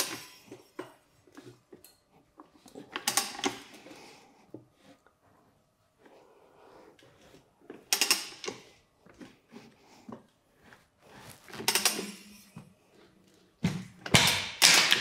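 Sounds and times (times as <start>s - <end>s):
tire changer creaks and clicks: 0.0s - 3.8s, 7.7s - 8.6s
tire bead scraping over rim: 10.5s - 12.9s.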